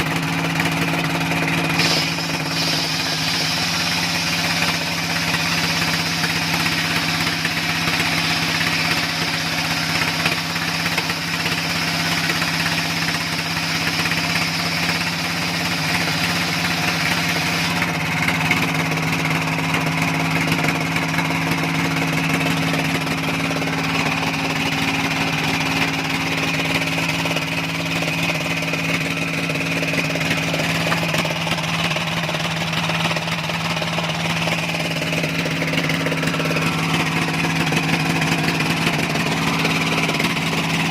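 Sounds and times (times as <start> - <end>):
engine running steadily: 0.0 - 40.9
high whine: 1.7 - 12.2.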